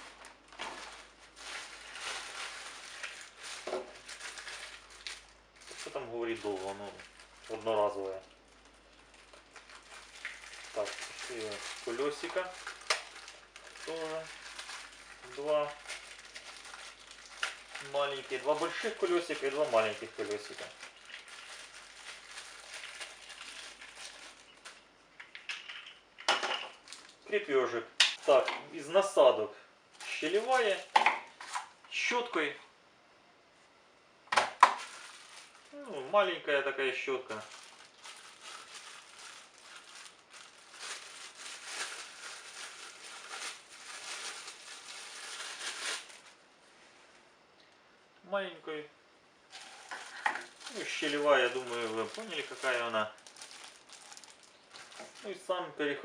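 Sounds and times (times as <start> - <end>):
plastic packaging rustling: 0.0 - 27.2, 28.2 - 29.2, 29.9 - 31.8, 34.3 - 35.9, 37.2 - 46.4, 49.5 - 55.5.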